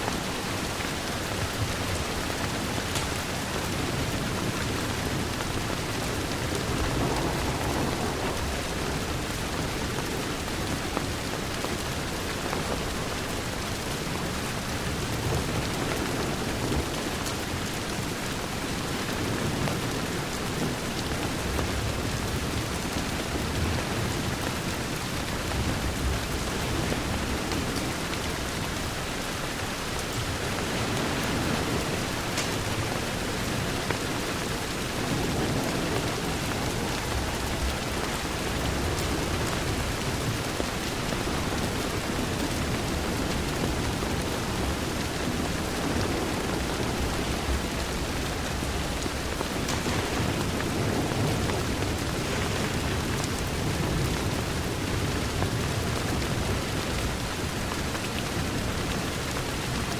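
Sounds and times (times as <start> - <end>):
rain on a window: 0.0 - 59.9
wood fire crackling: 23.2 - 54.0.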